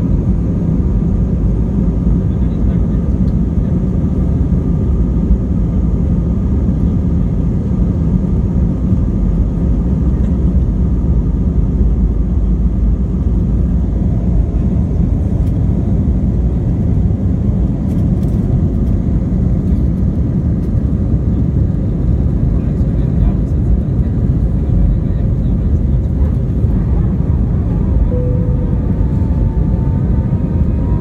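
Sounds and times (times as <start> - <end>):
jet cabin engine rumble: 0.0 - 31.0
faint constant tones: 26.5 - 31.0.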